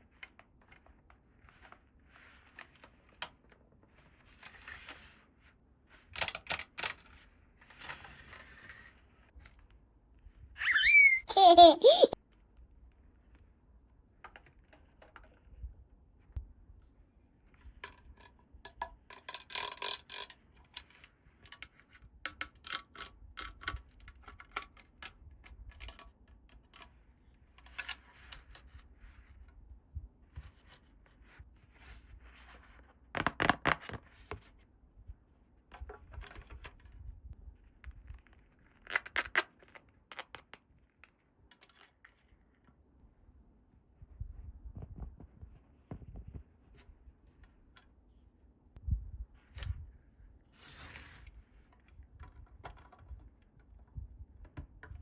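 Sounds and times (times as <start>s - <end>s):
plastic toy pieces clicking: 6.2s - 7.0s, 19.1s - 20.9s.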